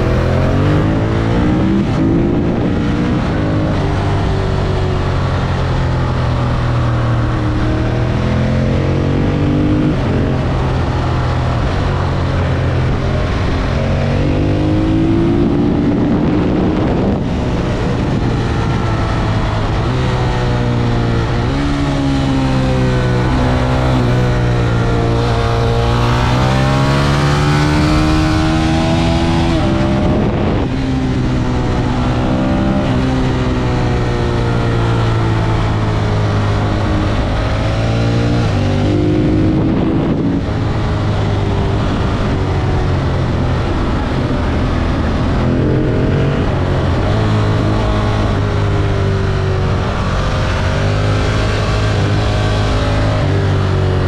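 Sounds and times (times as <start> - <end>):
motorcycle engine revving: 0.0 - 54.0.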